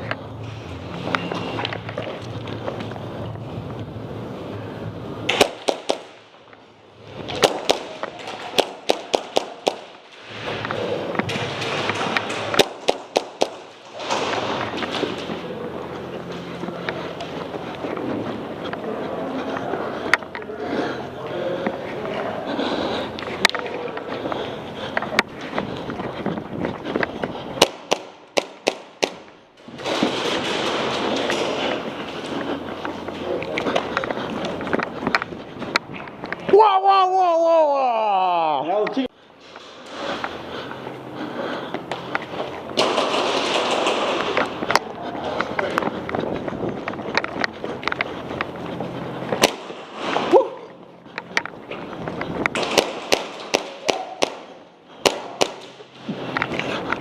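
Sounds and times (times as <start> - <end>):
airsoft gun shots: 5.3 - 6.2, 7.4 - 10.0, 52.6 - 55.7
airsoft guns firing: 5.3 - 6.4, 7.2 - 15.5, 27.6 - 31.9, 42.8 - 44.8, 49.4 - 50.4, 52.6 - 55.9
shuffling movement: 6.3 - 36.6, 39.0 - 57.0.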